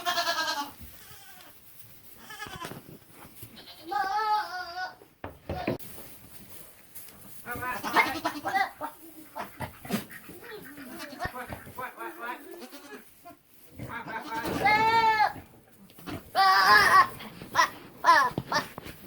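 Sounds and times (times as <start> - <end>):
goats bleating: 0.0 - 1.6, 2.2 - 2.8, 3.5 - 5.8, 7.5 - 11.6, 12.4 - 15.5, 16.1 - 18.8.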